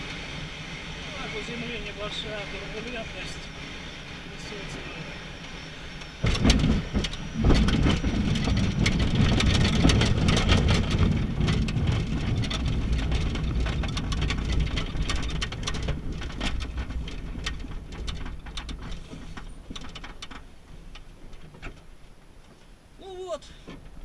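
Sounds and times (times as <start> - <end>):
glider wheel rumbling: 0.0 - 24.0
airframe rattling and knocking: 6.2 - 21.9.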